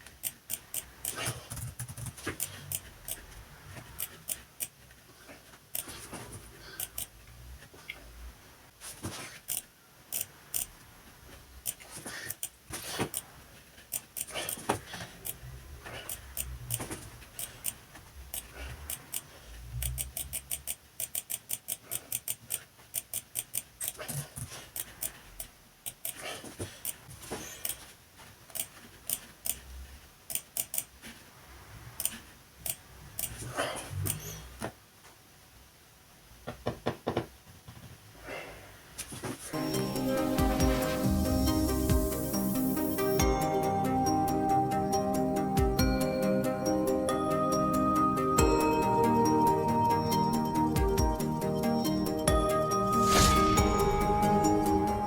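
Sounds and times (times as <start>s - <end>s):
rapid ticking: 0.0s - 3.2s, 16.1s - 24.0s, 25.9s - 26.2s.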